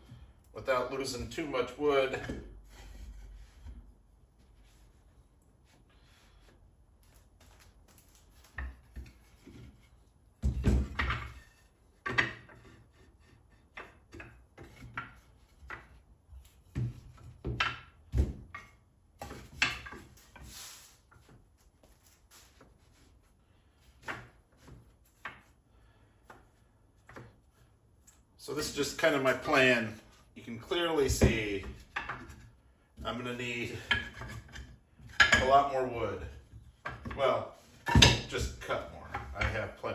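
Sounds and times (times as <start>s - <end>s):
wood scraping: 0.0s - 10.2s, 28.5s - 39.9s
wood strips clacking together: 10.7s - 20.4s.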